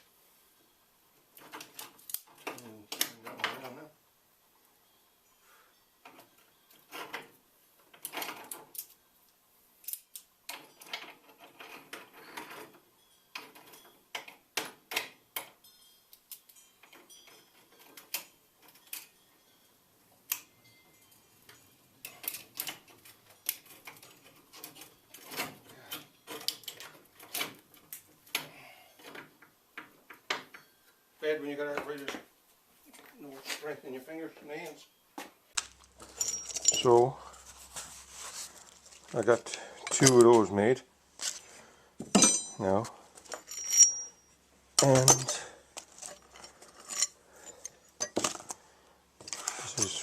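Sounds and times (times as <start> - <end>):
metal tools clinking: 35.6 - 48.6.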